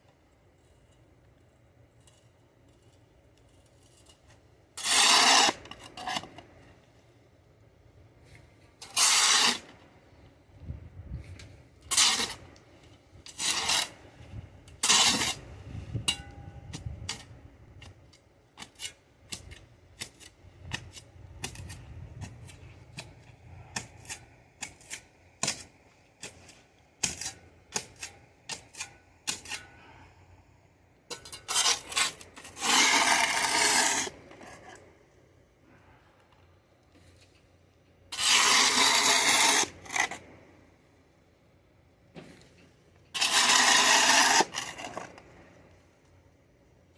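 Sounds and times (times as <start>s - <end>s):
shovel scraping concrete: 3.6s - 6.5s, 8.3s - 9.8s, 11.3s - 17.9s, 18.6s - 30.0s, 31.1s - 34.9s, 38.1s - 40.4s, 42.2s - 45.5s.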